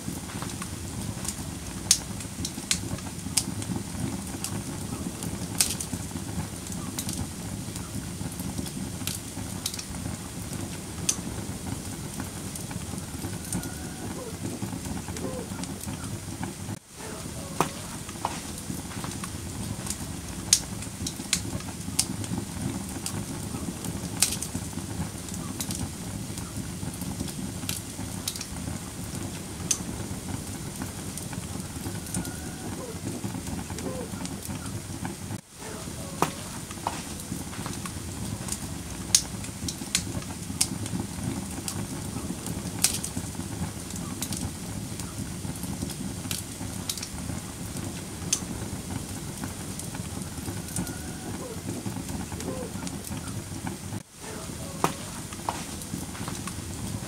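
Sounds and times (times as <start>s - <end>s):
fire pops and snaps: 0.0s - 57.0s
rush of burning flames: 0.0s - 57.0s.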